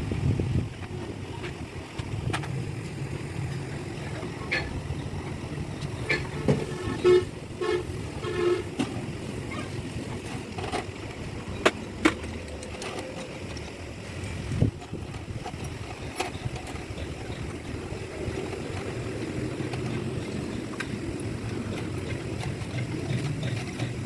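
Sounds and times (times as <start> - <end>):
steady low rumble: 0.0 - 24.0
vehicle horn toots: 6.0 - 8.8.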